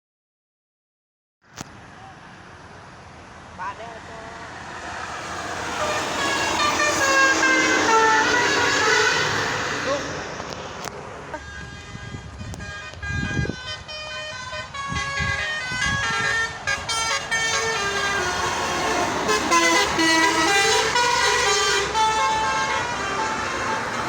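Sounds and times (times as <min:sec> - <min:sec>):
low vehicle rumble: 0:01.6 - 0:24.0
multi-tone horn playing a tune: 0:05.7 - 0:10.0, 0:11.3 - 0:24.0.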